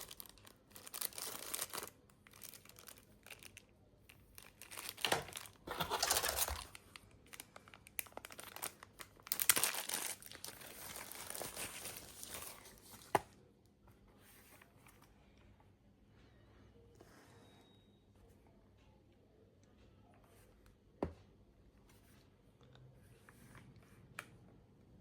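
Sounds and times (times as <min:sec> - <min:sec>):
packaging crinkling and tearing: 0:00.0 - 0:13.2.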